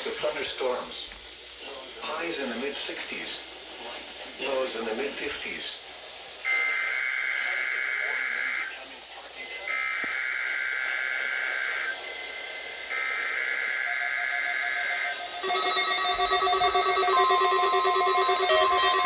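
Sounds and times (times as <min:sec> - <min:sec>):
multi-tone electronic alert: 0:12.0 - 0:19.0
warbling digital tone bursts: 0:12.9 - 0:19.0
steady alert tone: 0:14.0 - 0:19.0.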